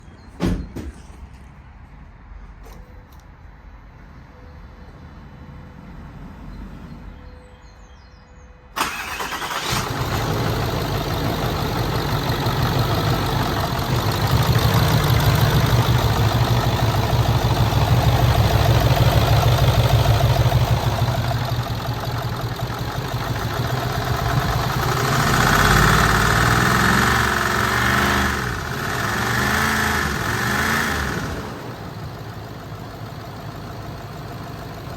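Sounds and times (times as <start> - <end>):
diesel engine starting and running: 8.7 - 34.9.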